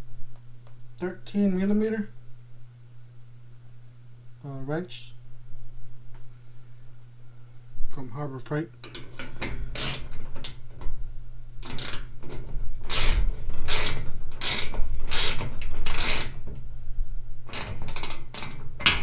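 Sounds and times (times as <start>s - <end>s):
ratchet wrench clicking: 9.2s - 10.6s, 11.6s - 12.1s, 12.9s - 16.4s, 17.5s - 19.0s.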